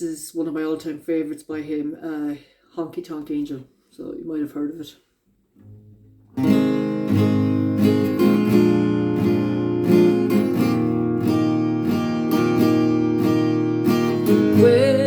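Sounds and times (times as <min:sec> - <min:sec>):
acoustic guitar strumming: 0:05.6 - 0:15.0.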